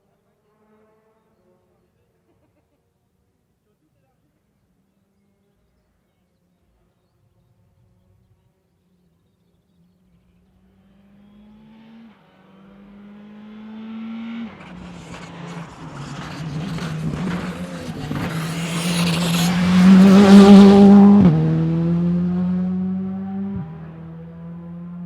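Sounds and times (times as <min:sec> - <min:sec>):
rally car engine accelerating: 0:10.6 - 0:25.0.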